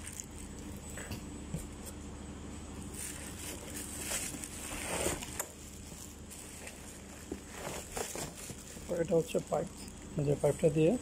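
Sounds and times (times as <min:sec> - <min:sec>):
plastic packaging crinkling: 0:00.0 - 0:00.9, 0:02.8 - 0:10.2.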